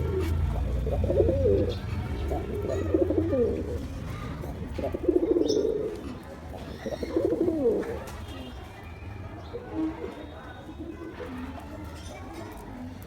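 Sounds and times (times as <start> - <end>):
pigeon cooing: 0.0 - 8.0.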